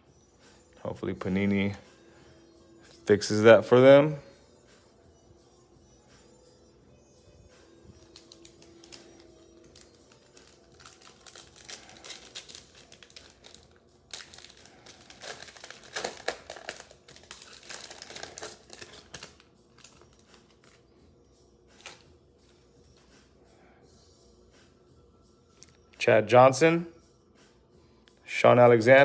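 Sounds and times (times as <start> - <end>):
plastic wrapper crinkling: 7.9 - 20.8, 21.8 - 22.0.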